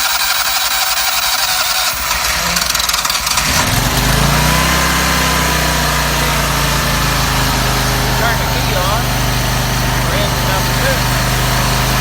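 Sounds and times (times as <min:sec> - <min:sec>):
mechanical clatter: 0:00.0 - 0:03.9
engine running: 0:00.0 - 0:12.0.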